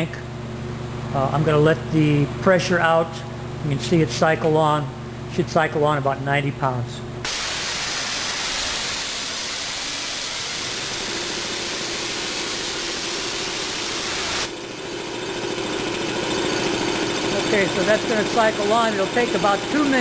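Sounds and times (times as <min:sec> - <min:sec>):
compressed air hissing: 0:07.2 - 0:14.5
air compressor running: 0:07.2 - 0:20.0.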